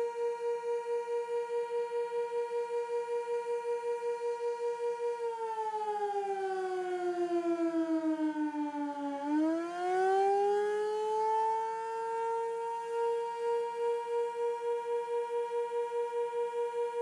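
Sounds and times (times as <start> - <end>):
warning siren wailing: 5.2 - 14.0.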